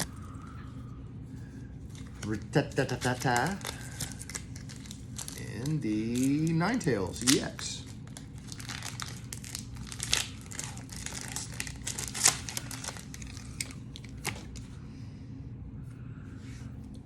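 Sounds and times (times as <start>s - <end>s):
low steady hum: 0.0s - 17.0s
foil wrappers crinkling: 1.8s - 14.7s.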